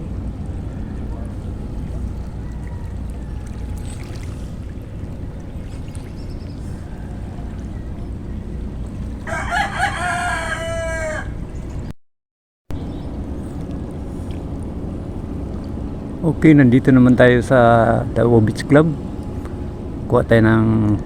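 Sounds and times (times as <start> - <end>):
steady low rumble: 0.0 - 11.9, 12.7 - 21.0
rooster crowing: 0.4 - 4.7, 6.7 - 8.1, 9.1 - 11.5.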